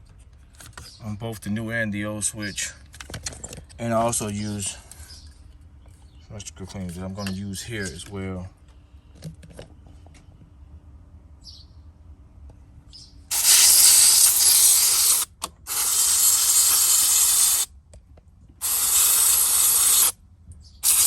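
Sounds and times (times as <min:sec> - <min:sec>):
aerosol spray hissing: 0:13.3 - 0:17.7, 0:18.6 - 0:20.2.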